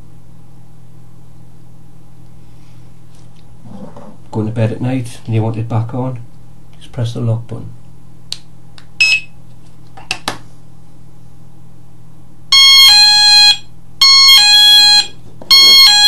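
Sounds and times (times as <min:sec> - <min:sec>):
two-note alarm signal: 0:12.5 - 0:16.0.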